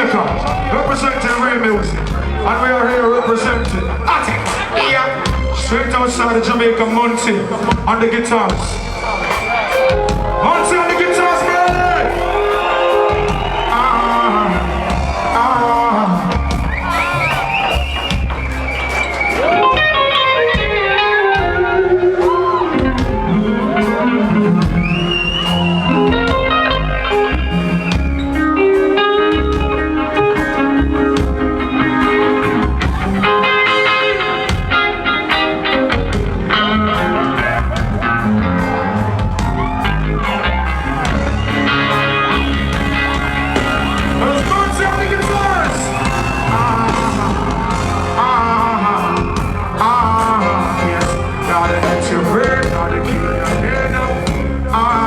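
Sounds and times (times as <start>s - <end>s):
bass and drums: 0.0s - 55.0s
electric guitar solo: 19.4s - 54.2s.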